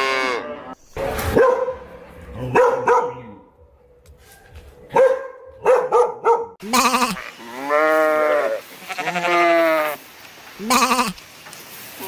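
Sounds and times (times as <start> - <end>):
dog barking: 1.2 - 3.5, 4.3 - 6.6
sheep bleating: 6.6 - 10.0, 10.6 - 11.2.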